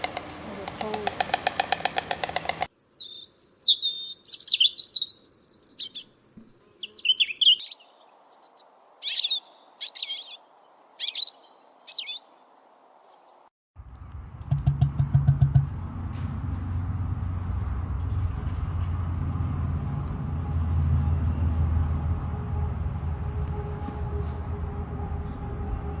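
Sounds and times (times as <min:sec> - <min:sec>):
songbird chirping and warbling: 0:02.7 - 0:13.5, 0:23.3 - 0:26.0
low rumble: 0:13.8 - 0:26.0.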